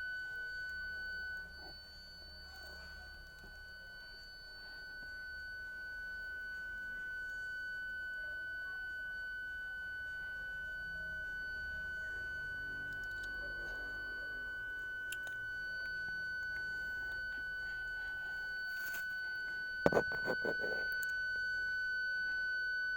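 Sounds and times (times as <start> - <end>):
continuous high beep tone: 0.0 - 22.9.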